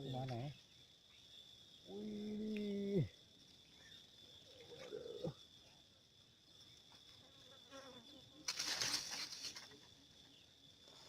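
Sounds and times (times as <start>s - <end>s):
high insect drone: 0.0s - 11.0s.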